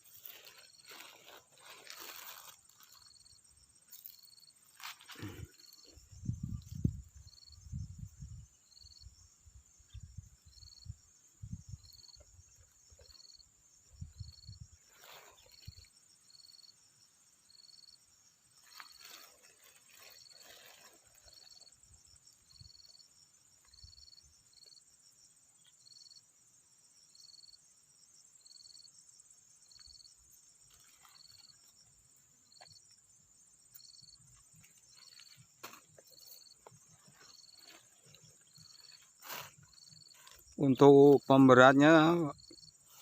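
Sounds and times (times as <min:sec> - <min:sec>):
cricket chirping: 0:00.0 - 0:43.0
high insect trill: 0:00.0 - 0:43.0.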